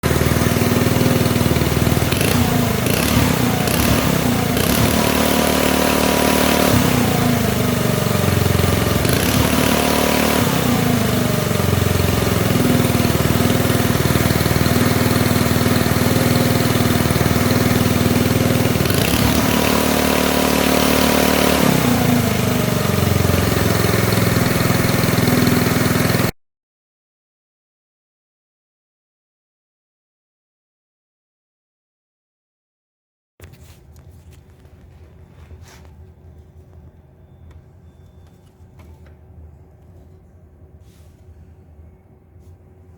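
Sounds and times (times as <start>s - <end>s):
engine revving: 0.0s - 26.3s.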